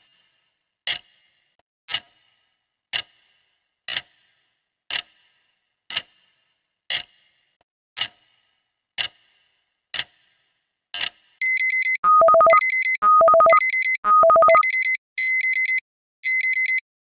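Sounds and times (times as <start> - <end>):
electronic alarm beeping: 11.4 - 16.8
clock ticking: 12.0 - 14.9.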